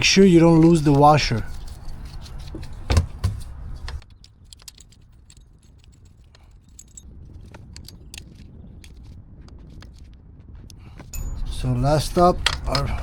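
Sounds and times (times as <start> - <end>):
metallic clicks of hand tools: 3.3 - 8.4, 12.2 - 13.0.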